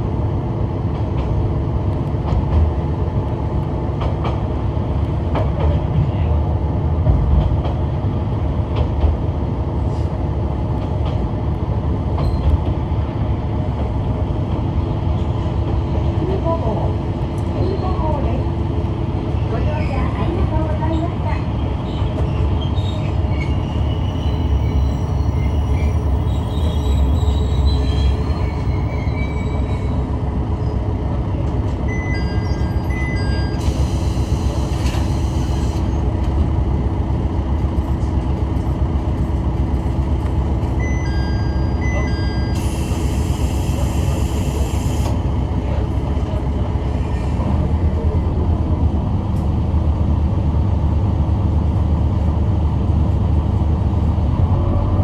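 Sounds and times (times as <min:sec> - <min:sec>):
railcar humming: 0:00.0 - 0:55.0
wheels rumbling on rail: 0:00.0 - 0:55.0
level-crossing warning bell: 0:31.8 - 0:34.7, 0:40.8 - 0:43.5.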